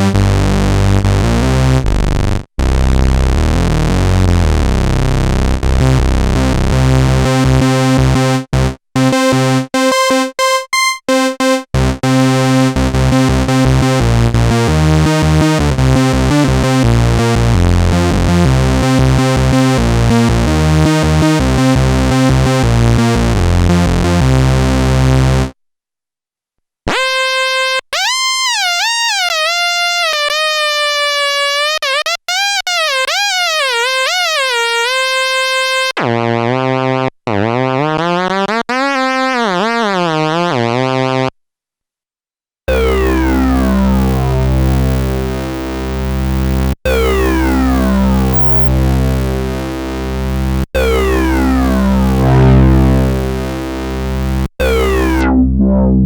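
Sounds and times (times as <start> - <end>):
buzzy synthesizer bass line: 0.0 - 25.5, 42.7 - 56.0
sliding synthesizer lead: 47.0 - 48.9, 50.8 - 56.0.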